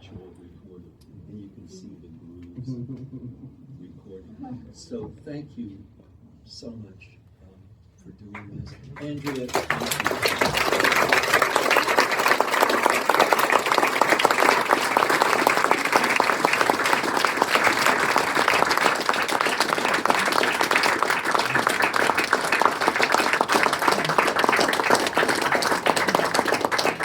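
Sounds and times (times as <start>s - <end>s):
audience applauding: 8.4s - 27.0s.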